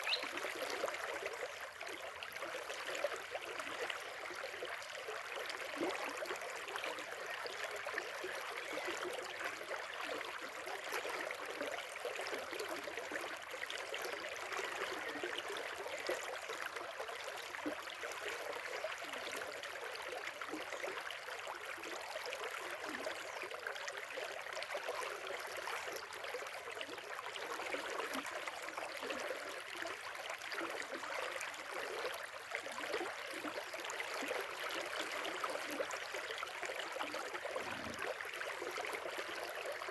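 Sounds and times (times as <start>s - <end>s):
river flowing: 0.0s - 0.4s.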